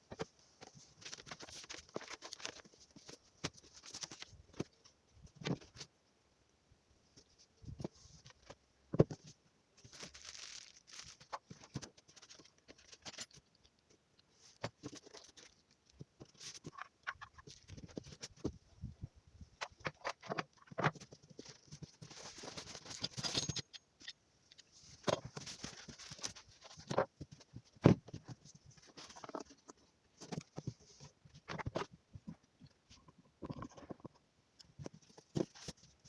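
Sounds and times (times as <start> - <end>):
packaging rustling and tearing: 9.9 - 13.3.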